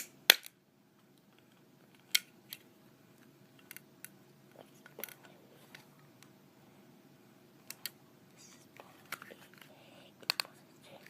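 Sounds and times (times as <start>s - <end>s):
plastic tools clicking: 9.1s - 10.5s.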